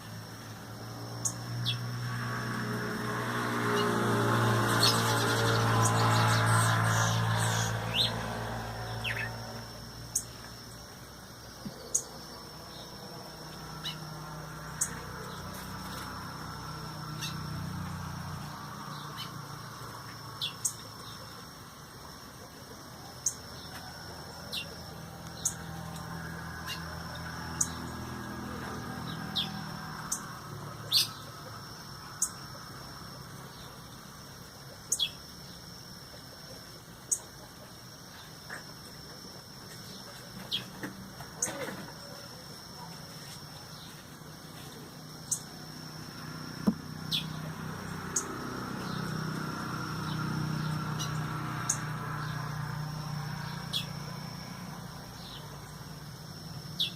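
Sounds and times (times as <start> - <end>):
small birds chip calls: 4.6 - 10.6, 11.5 - 28.0, 28.6 - 32.5, 34.7 - 35.7, 47.0 - 54.1.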